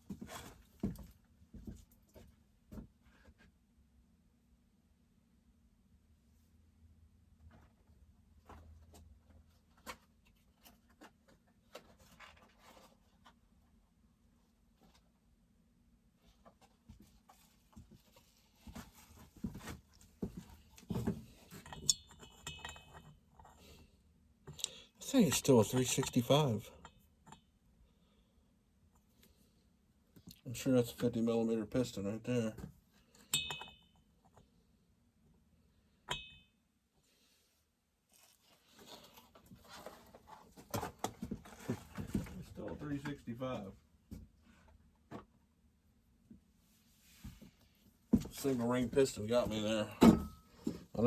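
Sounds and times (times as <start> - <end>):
handling and rustling: 8.4 - 13.4, 16.2 - 23.8, 38.1 - 43.4
sharp metallic clink: 33.4 - 33.9.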